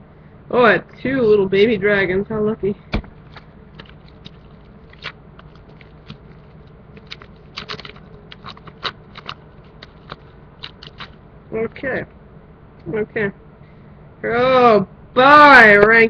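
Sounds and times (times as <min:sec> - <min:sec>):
low steady hum: 0:00.0 - 0:16.0
cards clicking and snapping: 0:02.9 - 0:11.2.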